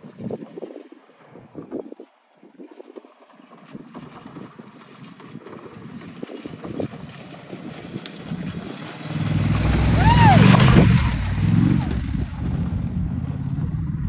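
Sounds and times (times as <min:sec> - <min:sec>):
wind buffeting microphone: 0:00.0 - 0:14.0
motorcycle engine rumble: 0:08.0 - 0:14.0.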